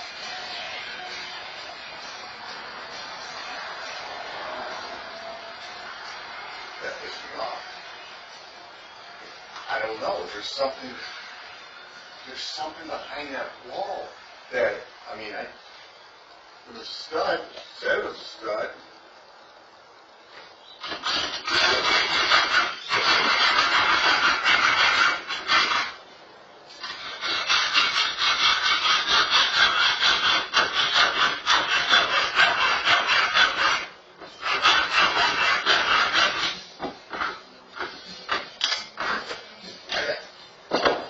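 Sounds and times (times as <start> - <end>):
screw grinding into wall: 20.8 - 26.0, 26.8 - 36.6.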